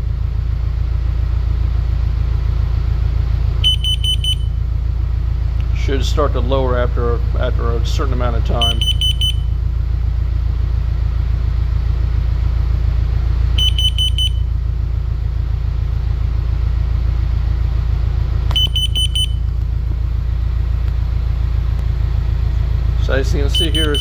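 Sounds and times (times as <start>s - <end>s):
low rumble: 0.0s - 24.0s
alarm high-pitched beeps: 3.6s - 4.6s, 8.6s - 9.5s, 13.6s - 14.5s, 18.5s - 19.4s, 23.5s - 24.0s.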